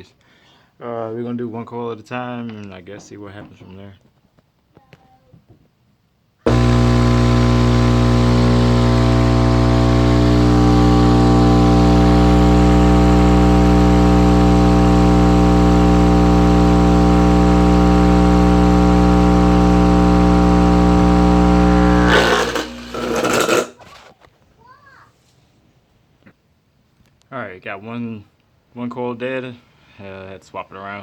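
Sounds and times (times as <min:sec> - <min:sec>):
distorted subwoofer hum: 0:06.5 - 0:23.8.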